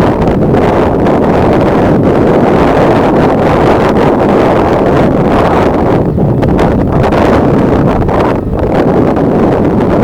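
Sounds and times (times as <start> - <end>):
gusty wind buffeting microphone: 0.0 - 10.0.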